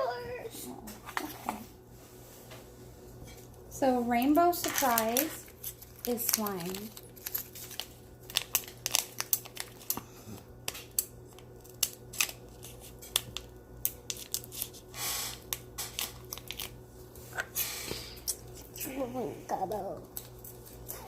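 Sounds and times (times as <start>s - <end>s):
plastic rustling: 4.1s - 10.0s.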